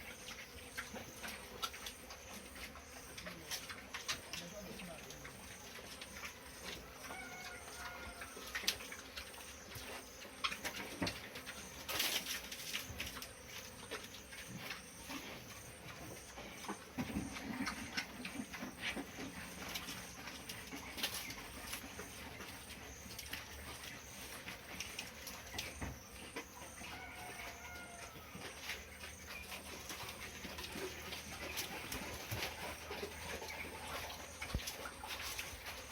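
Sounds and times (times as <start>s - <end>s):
pigs moving clicks and knocks: 0.0s - 35.9s
faint pig call: 0.8s - 10.0s.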